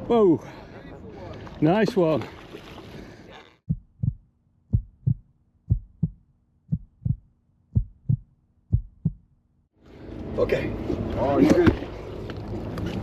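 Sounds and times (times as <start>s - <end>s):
heartbeat thumps: 3.7s - 9.4s.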